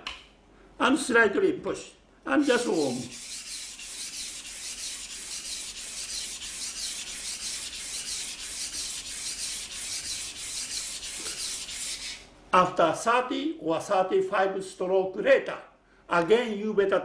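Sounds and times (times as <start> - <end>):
knife scraping on whetstone: 2.4 - 12.2.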